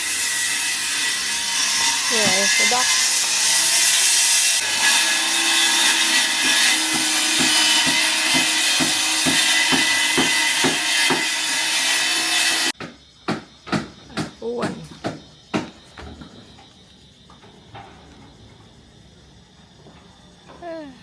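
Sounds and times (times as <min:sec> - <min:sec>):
saw rasping: 0:00.0 - 0:12.8.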